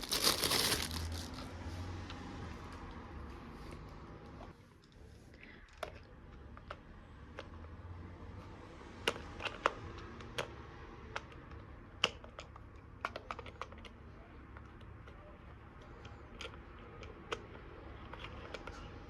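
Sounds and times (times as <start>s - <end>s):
toy dishes clicking and tapping: 9.0s - 19.0s.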